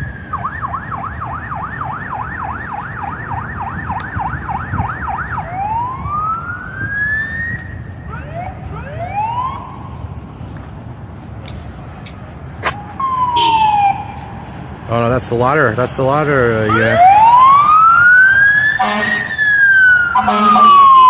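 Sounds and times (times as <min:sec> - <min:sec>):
fire engine siren: 0:00.0 - 0:10.2, 0:12.7 - 0:14.6, 0:16.6 - 0:21.0.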